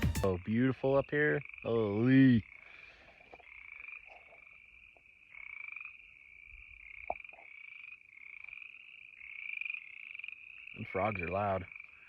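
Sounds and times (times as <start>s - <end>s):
frogs calling in chorus: 0.4s - 12.0s.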